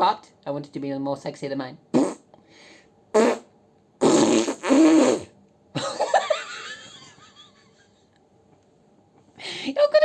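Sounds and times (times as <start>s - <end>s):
fart noises: 1.9s - 2.3s, 3.1s - 5.4s.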